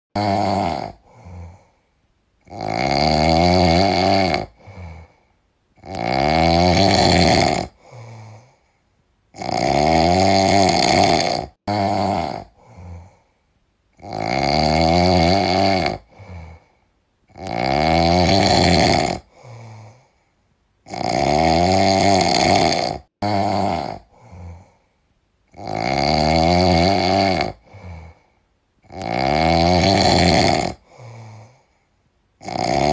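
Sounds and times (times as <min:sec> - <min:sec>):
loud snoring: 0:00.1 - 0:01.8, 0:02.4 - 0:05.2, 0:05.8 - 0:08.6, 0:09.3 - 0:13.3, 0:13.9 - 0:20.1, 0:20.8 - 0:24.8, 0:25.5 - 0:31.7, 0:32.4 - 0:32.9
soft breath: 0:01.0 - 0:02.0, 0:07.8 - 0:09.0, 0:12.5 - 0:13.5, 0:19.3 - 0:20.5, 0:24.0 - 0:25.1, 0:27.6 - 0:28.5, 0:30.8 - 0:32.1.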